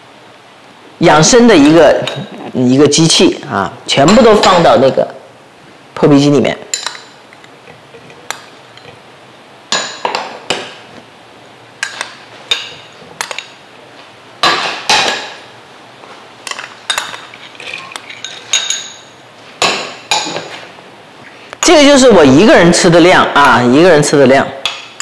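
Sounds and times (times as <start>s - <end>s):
utensils clinking against blender jar: 16.5s - 19.1s.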